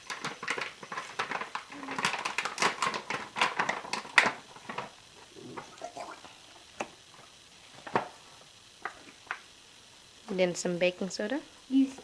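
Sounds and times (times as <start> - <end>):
bag crinkling and scraping: 0.0 - 5.8.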